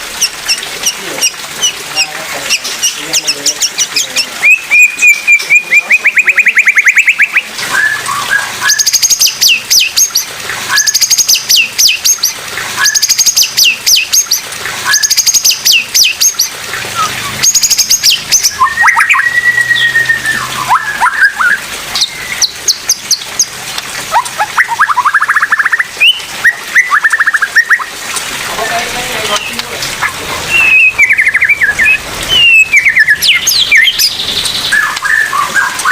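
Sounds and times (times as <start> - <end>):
bird singing sharp staccato notes: 29.3 - 35.9.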